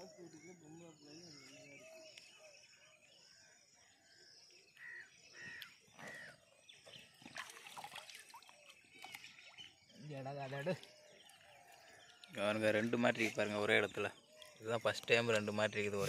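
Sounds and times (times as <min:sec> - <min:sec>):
bird calling: 0:04.6 - 0:07.0.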